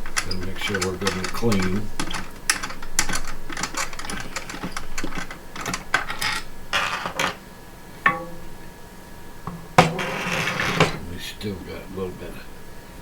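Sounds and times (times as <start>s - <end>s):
sharp ringing tap: 8.0s - 8.6s.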